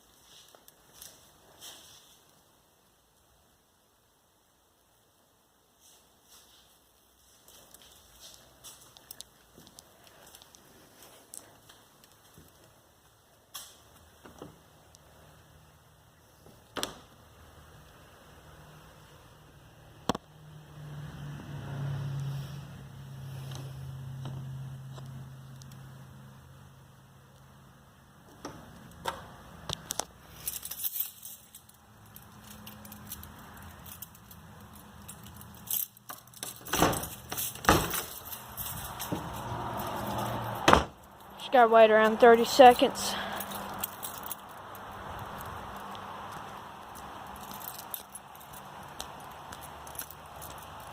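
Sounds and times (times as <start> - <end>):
small metallic jingling: 30.2 - 50.9.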